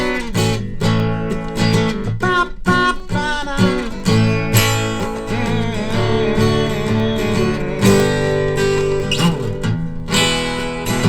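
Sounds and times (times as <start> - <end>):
guitar strumming chords: 0.0 - 11.0
person singing pop-rock song: 2.4 - 8.9.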